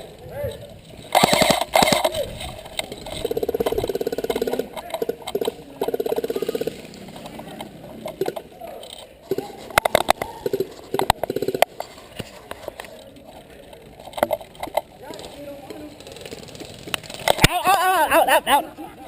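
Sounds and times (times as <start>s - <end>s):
airsoft guns firing bursts: 1.1s - 2.3s, 2.9s - 7.2s, 9.3s - 11.8s.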